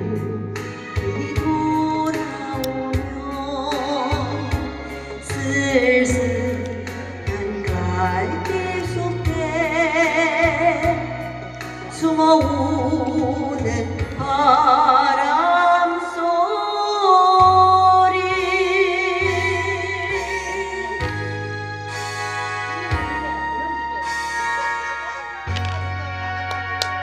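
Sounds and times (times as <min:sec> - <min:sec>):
woman singing a ballad: 0:00.0 - 0:22.0.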